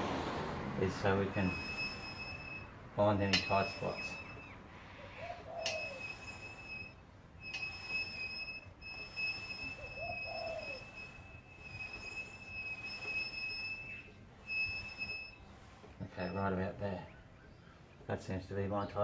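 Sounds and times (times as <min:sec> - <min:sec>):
high-pitched whine: 0:00.8 - 0:02.7
dove cooing: 0:04.9 - 0:06.4, 0:09.7 - 0:11.1.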